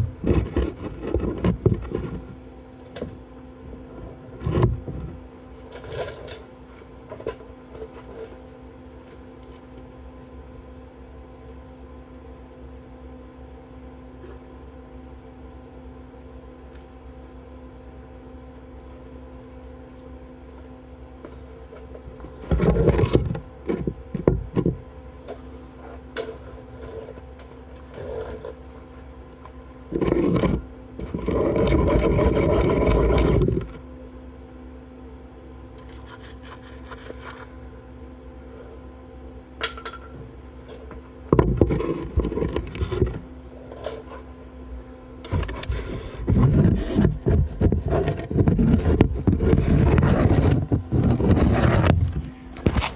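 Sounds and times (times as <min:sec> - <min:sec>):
steady low hum: 0:16.6 - 0:52.9.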